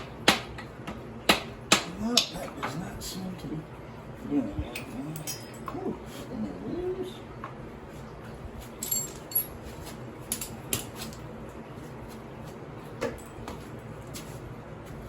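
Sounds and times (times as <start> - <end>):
metal tools clinking: 4.8 - 5.8, 8.8 - 9.6.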